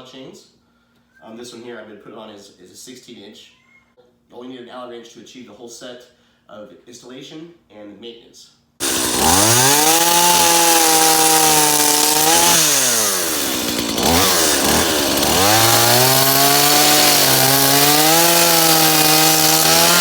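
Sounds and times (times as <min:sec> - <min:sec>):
chainsaw engine at high throttle: 0:08.8 - 0:20.0.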